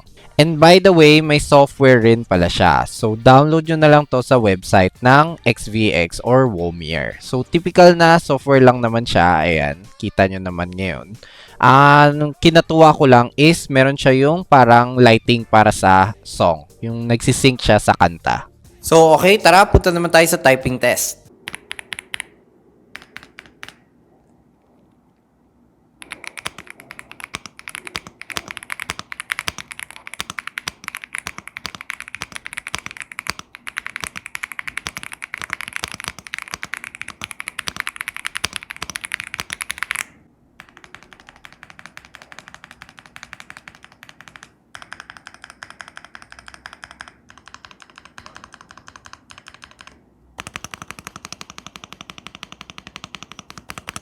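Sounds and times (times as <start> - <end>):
fast mechanical keyboard typing: 21.4 - 23.8, 26.0 - 54.0.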